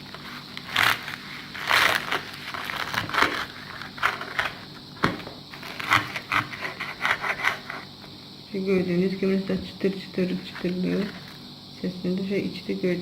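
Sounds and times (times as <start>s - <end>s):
knife cutting crunchy fried dough: 0.6s - 4.6s, 5.6s - 7.9s.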